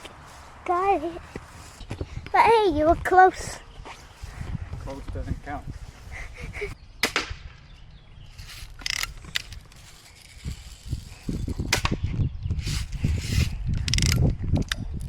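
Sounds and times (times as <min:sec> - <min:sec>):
wind rumbling on microphone: 0:00.0 - 0:15.0
bb gun firing crack: 0:07.0 - 0:07.6, 0:11.7 - 0:12.0
gun handling clicks and rustles: 0:08.3 - 0:15.0.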